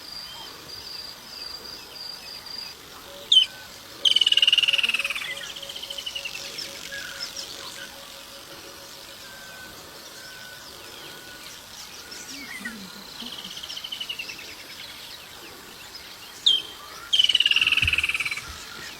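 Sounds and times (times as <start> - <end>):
high insect hiss: 0.0 - 18.9
rapid pulsed trill: 3.3 - 12.4.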